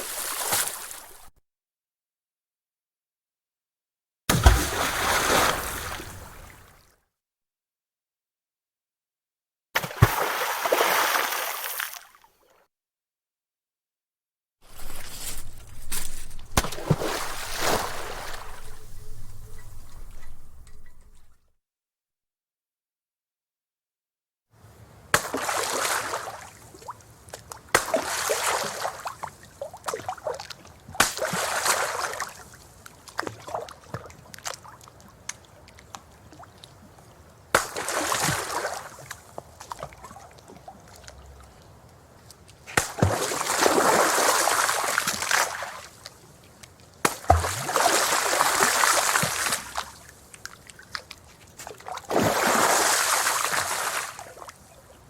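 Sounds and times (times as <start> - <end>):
stones plopping into water: 0.0 - 1.3, 14.7 - 21.3, 47.1 - 47.8
water splashing and sloshing: 0.0 - 1.4, 4.3 - 7.0, 9.8 - 12.5, 14.6 - 21.4, 42.8 - 45.9, 47.1 - 54.7.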